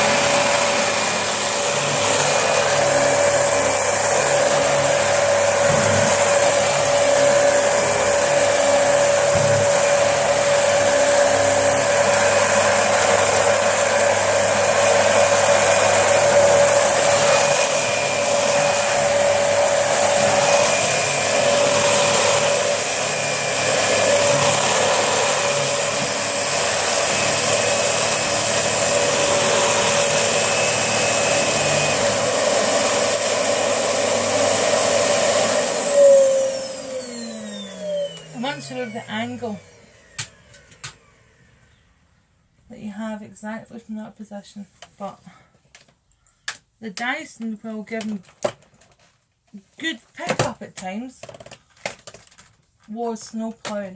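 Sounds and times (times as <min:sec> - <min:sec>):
vacuum cleaner running on carpet: 0:00.0 - 0:41.9.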